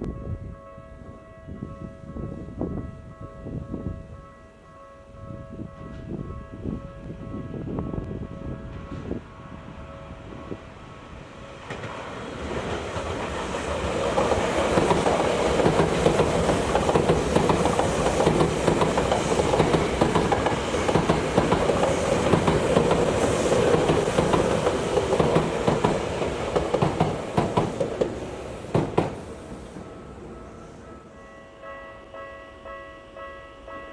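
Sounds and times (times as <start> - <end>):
electric train passing: 0.0 - 33.9.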